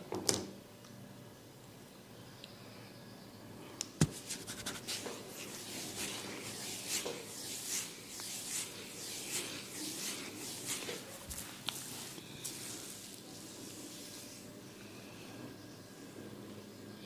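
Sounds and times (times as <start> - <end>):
scratching through hair: 4.0 - 14.5.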